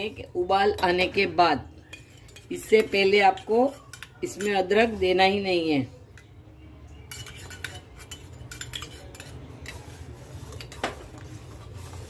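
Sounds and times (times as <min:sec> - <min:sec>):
spoon clinking against pan: 0:01.8 - 0:04.9, 0:06.1 - 0:09.8.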